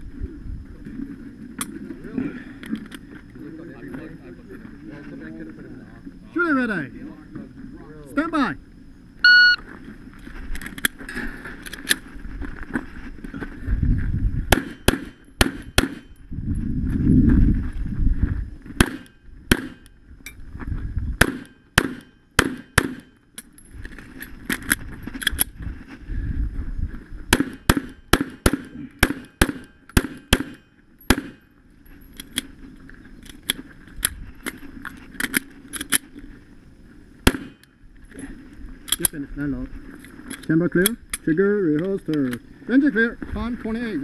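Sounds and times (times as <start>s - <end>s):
pistol shots: 14.5s - 16.1s, 18.8s - 19.8s, 21.2s - 23.2s, 27.3s - 31.4s, 37.2s - 37.6s.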